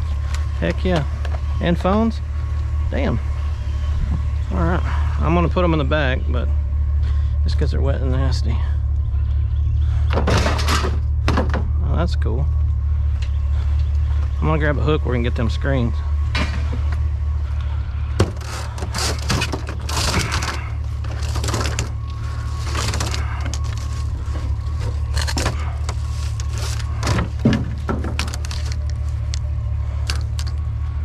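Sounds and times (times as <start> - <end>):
steady low hum: 0.0 - 31.0
rummaging through trash: 18.0 - 30.6.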